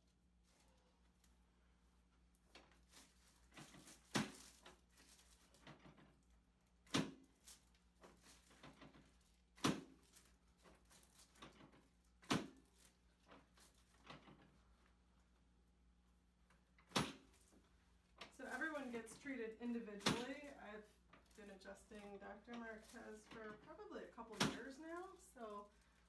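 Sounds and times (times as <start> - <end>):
rustling: 0.0 - 26.0.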